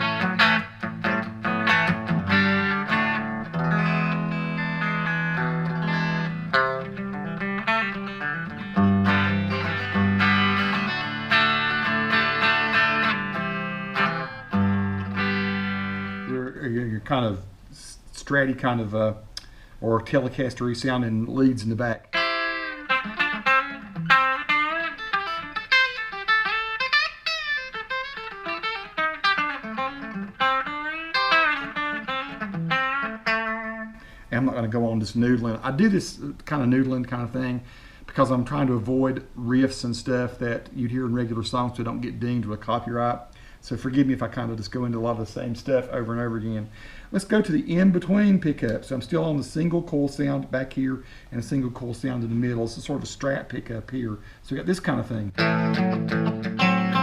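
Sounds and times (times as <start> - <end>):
electric guitar lead notes: 0.0 - 16.6, 22.1 - 34.2, 55.3 - 57.0.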